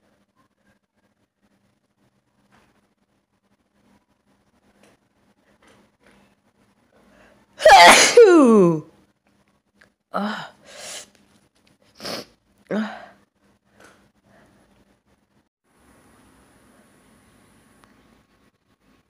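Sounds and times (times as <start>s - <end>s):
person sneezing: 7.6s - 8.8s.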